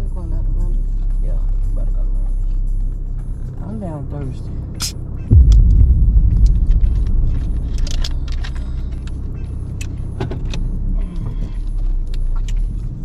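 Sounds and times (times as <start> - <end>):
car cabin rumble: 5.3 - 12.5.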